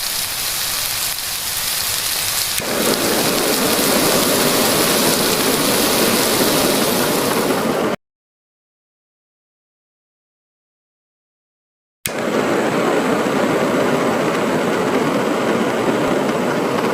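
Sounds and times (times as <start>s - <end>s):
stir fry sizzling in pan: 0.0s - 8.0s.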